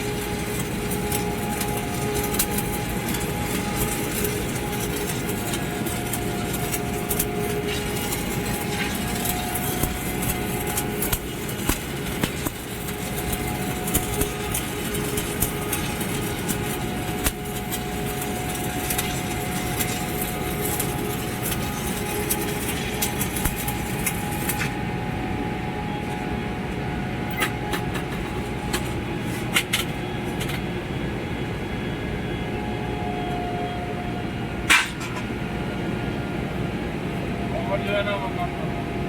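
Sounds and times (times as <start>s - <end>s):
welding arc crackling: 0.0s - 24.9s
low machine hum: 0.0s - 39.0s.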